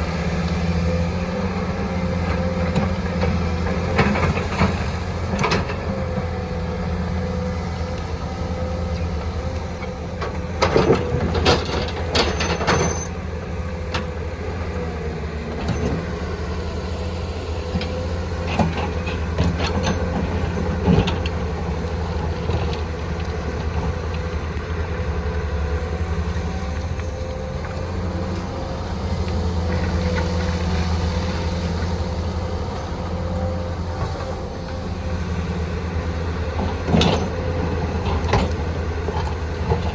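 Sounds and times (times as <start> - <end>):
excavator diesel engine whining: 0.0 - 39.9.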